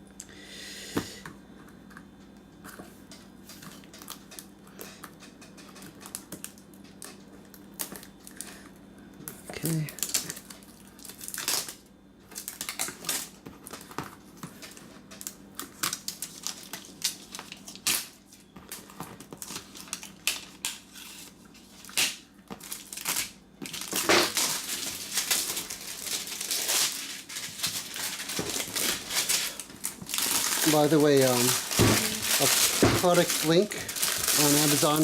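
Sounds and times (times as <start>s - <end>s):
packaging crinkling and tearing: 9.6s - 35.0s.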